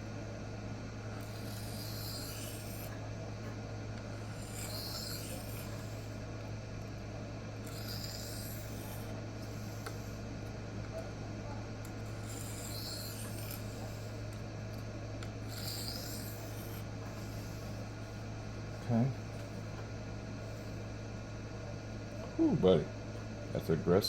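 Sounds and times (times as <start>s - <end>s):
knife scraping on sharpening plate: 1.2s - 2.9s, 4.3s - 5.8s.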